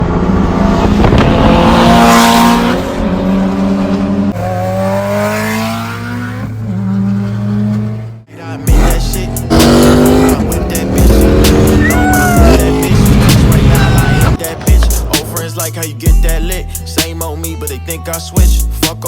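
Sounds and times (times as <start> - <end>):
car engine accelerating hard: 0.0 - 14.7.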